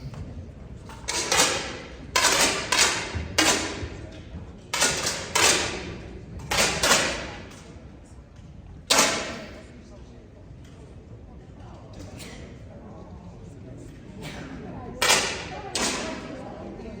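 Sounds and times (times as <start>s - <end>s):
air rifle shots with echo: 4.8s - 7.6s, 15.0s - 16.4s.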